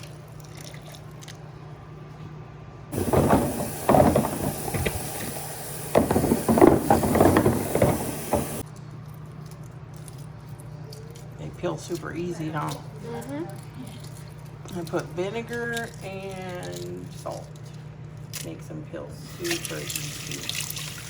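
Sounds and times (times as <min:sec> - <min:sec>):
jars knocking in sink: 0:02.9 - 0:08.6
water running from tap: 0:02.9 - 0:08.6, 0:19.2 - 0:21.0.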